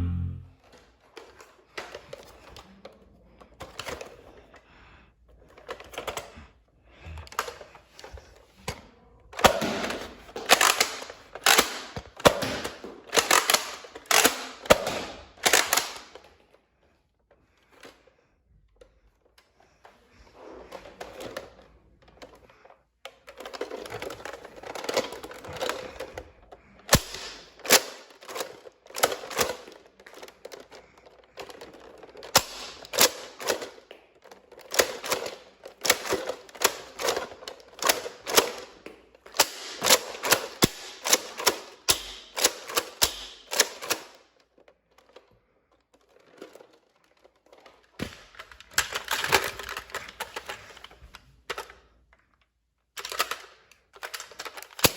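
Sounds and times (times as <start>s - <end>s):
toy blasters clicking and firing: 9.4s - 16.3s, 26.9s - 30.8s, 31.4s - 33.9s, 34.6s - 44.3s, 53.0s - 54.9s.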